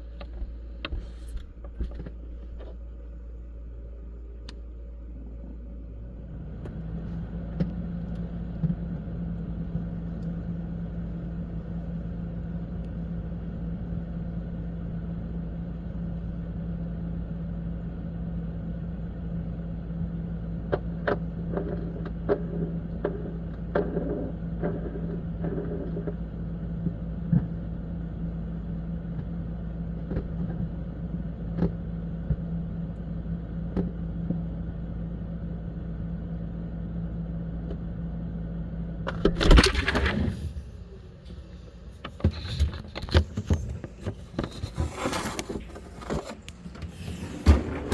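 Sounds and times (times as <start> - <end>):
refrigerator humming: 31.5 - 47.9.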